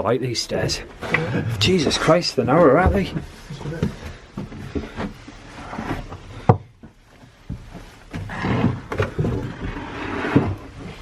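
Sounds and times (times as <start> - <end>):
footsteps climbing stairs: 2.0 - 5.3, 5.9 - 9.6.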